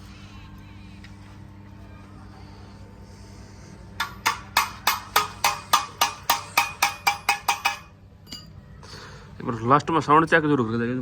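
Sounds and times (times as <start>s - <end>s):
hammer striking steel pipe: 4.0s - 8.5s.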